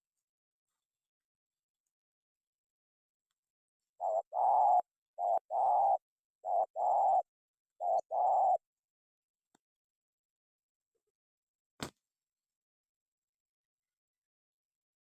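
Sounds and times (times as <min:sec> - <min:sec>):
dove cooing: 0:04.0 - 0:08.6.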